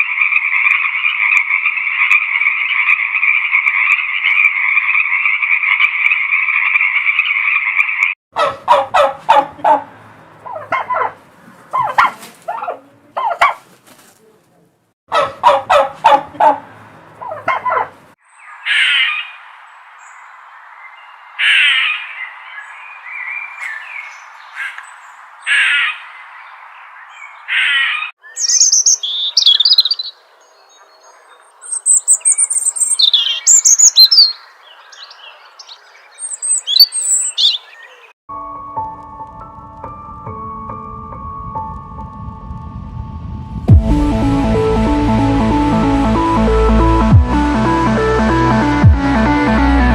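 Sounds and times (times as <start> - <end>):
songbirds chirping and trilling: 0.0 - 13.6, 15.1 - 38.2
turkey gobbling: 0.2 - 13.7, 15.1 - 18.0
bird calling: 17.2 - 19.4, 21.0 - 38.2.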